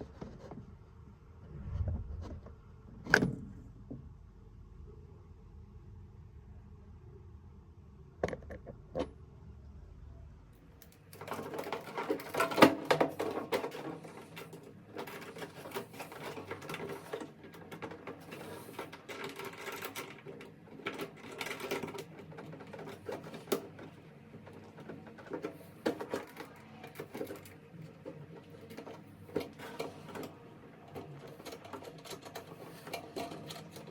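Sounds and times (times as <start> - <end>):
tools and parts clattering: 11.1 - 33.9.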